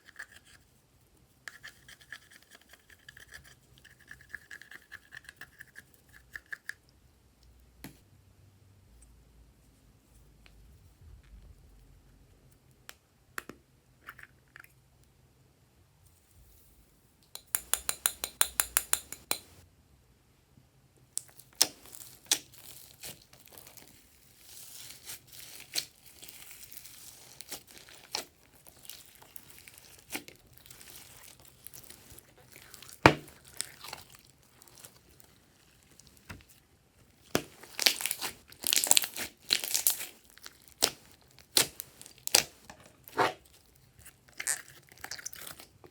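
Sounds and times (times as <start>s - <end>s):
hands squishing slime: 21.2s - 36.6s, 37.2s - 45.9s.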